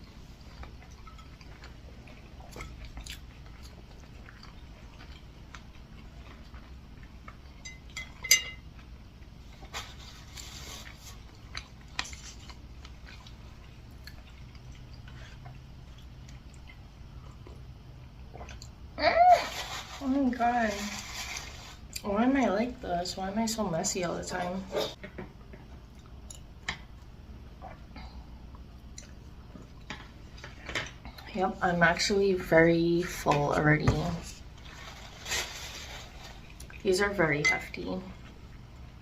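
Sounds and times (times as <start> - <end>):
chewing and biting food: 0.4 - 9.7.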